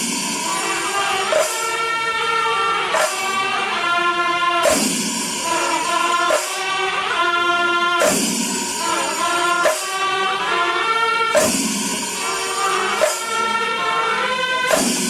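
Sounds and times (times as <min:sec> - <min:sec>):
shimmering percussion hit: 0:00.0 - 0:02.2, 0:02.9 - 0:03.7, 0:04.6 - 0:07.2, 0:08.0 - 0:10.6, 0:11.3 - 0:13.6, 0:14.7 - 0:15.0
sustained held notes: 0:04.6 - 0:15.0.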